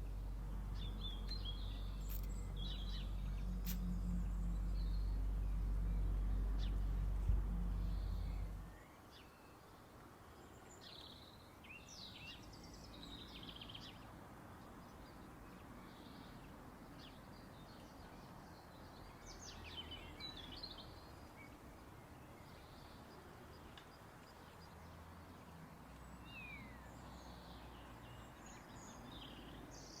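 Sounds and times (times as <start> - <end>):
loud low hum: 0.0 - 8.7
faint birds chirping: 0.0 - 30.0.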